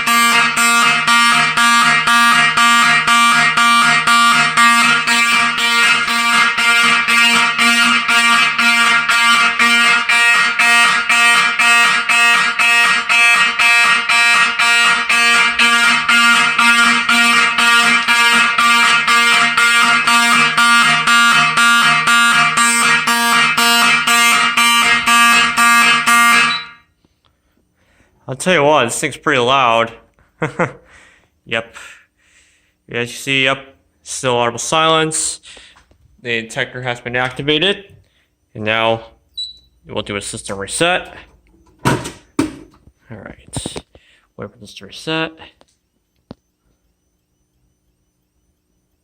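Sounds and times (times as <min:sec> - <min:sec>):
fire alarm horns pulsing: 0:00.0 - 0:27.0, 0:36.5 - 0:43.0.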